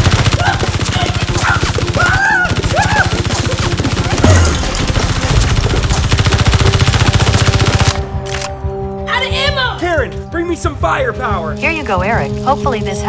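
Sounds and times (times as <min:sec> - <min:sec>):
automatic gunfire: 0:00.0 - 0:08.5.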